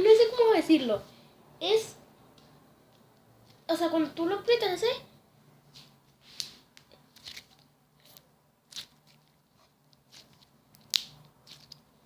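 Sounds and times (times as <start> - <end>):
slime crackling when squeezed: 7.1 - 11.9.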